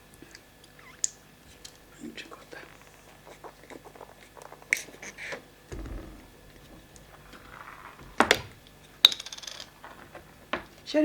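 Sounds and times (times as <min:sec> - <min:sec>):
chewing and mouth clicks: 0:00.0 - 0:05.6
low thud: 0:05.7 - 0:08.9.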